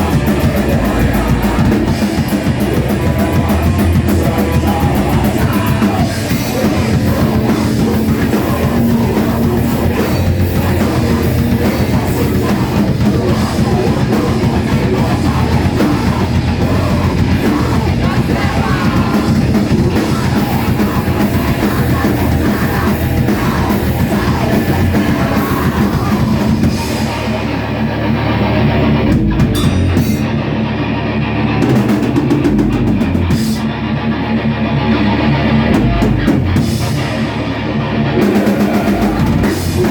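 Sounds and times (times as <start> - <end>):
distorted electric guitar: 0.0 - 39.9
rock band playing live: 0.0 - 39.9
sharp accented band hits: 29.6 - 30.4.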